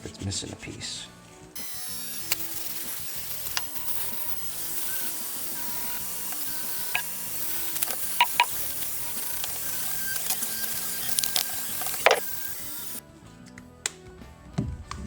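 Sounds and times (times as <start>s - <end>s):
light background music: 0.0s - 15.0s
hiss of cleaning metal: 1.6s - 13.0s
sharp clicks: 1.6s - 13.0s.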